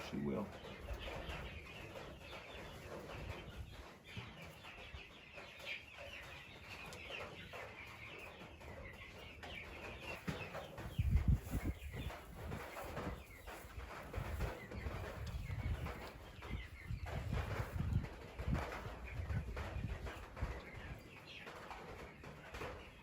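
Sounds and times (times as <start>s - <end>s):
chickens clucking: 0.0s - 23.0s.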